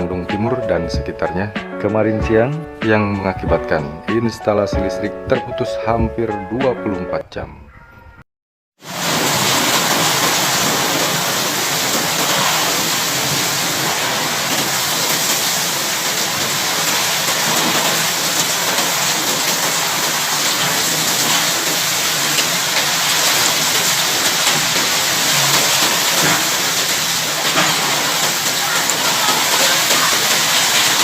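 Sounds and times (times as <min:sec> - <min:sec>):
heavy rain pouring: 0:08.8 - 0:31.0.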